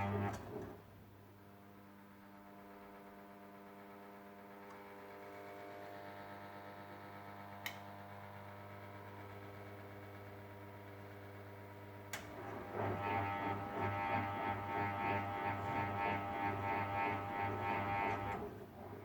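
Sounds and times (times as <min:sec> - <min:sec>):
washing machine humming: 0:00.0 - 0:01.0, 0:01.9 - 0:19.0.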